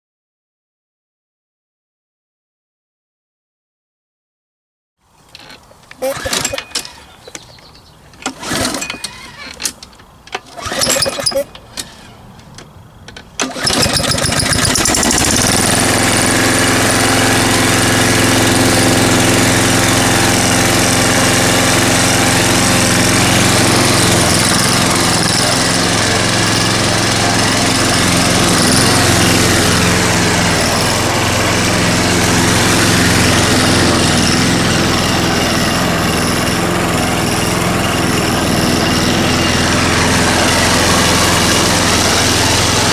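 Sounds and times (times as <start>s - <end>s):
lawn mower engine running: 5.2s - 42.9s
recoil cord pulls: 5.3s - 7.5s, 8.2s - 15.6s.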